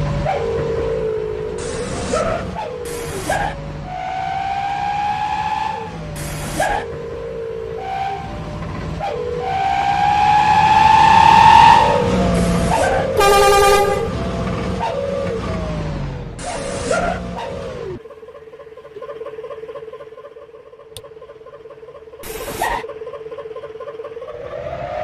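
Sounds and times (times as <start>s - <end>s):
engine rumble: 0.0s - 25.0s
truck multi-tone horn: 10.6s - 14.8s
sharp horn blasts: 13.2s - 14.2s.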